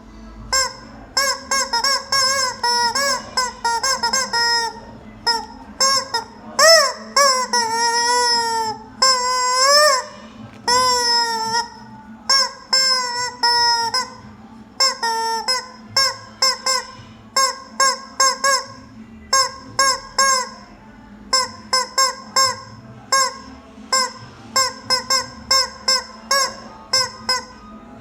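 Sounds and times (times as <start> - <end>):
rubber chicken toy squeaking: 0.4 - 28.0.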